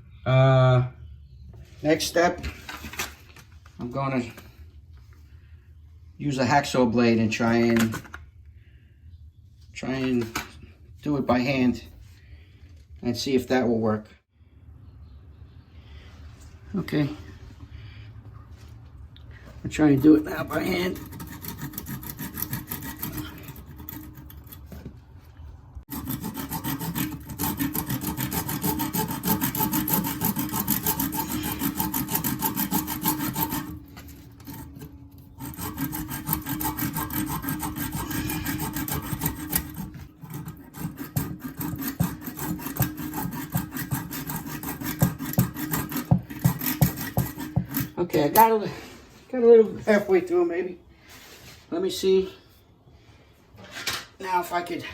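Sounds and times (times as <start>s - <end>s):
hacksaw sawing through bolt: 19.7s - 24.8s, 25.9s - 48.6s.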